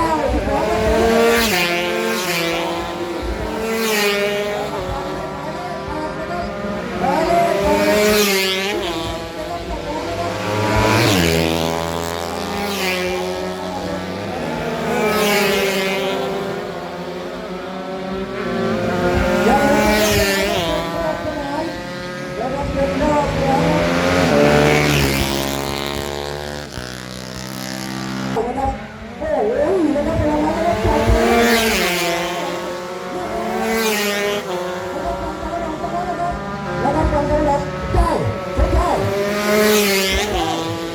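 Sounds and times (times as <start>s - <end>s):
racing motorcycles passing: 0.0s - 40.9s.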